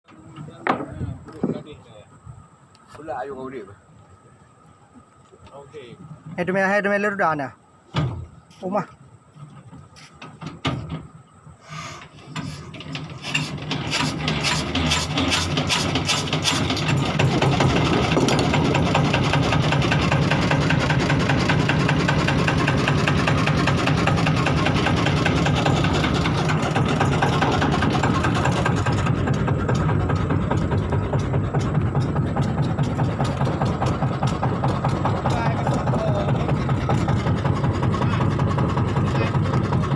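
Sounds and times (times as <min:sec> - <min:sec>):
diesel boat engine knocking: 0:12.7 - 0:39.9.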